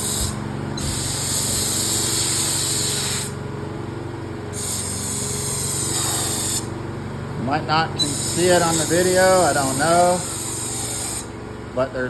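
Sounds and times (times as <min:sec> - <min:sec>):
air hissing from blower nozzle: 0:00.0 - 0:03.4, 0:04.5 - 0:06.7, 0:08.0 - 0:11.4
steady low hum: 0:00.0 - 0:12.0.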